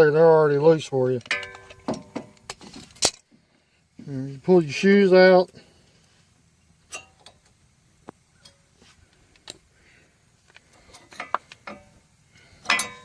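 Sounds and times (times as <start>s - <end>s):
metallic clicks of brake pads: 1.2s - 3.3s, 12.6s - 13.0s.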